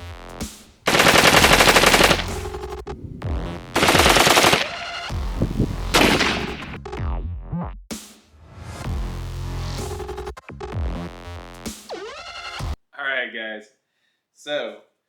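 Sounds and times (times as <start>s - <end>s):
automatic gunfire: 0.9s - 2.6s, 3.8s - 5.1s, 5.9s - 6.8s.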